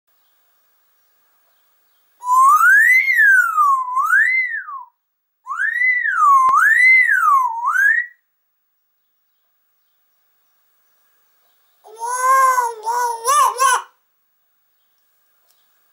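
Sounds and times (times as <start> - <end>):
whistling sliding up and down: 2.2 - 4.9, 5.5 - 8.2.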